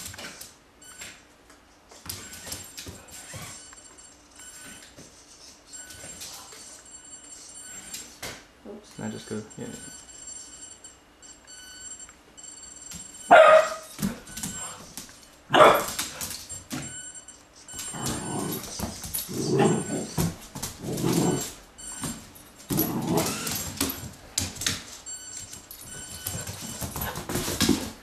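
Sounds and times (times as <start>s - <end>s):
puppy barking: 13.3s - 13.9s, 15.5s - 15.9s.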